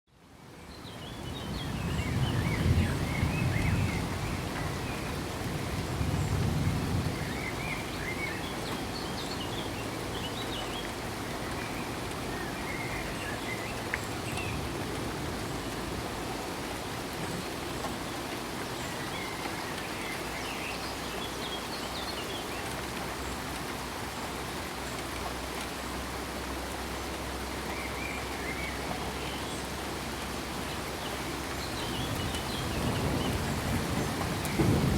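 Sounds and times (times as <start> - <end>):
steady rain falling: 0.1 - 34.9
low roll of thunder: 1.6 - 7.8, 31.9 - 34.9.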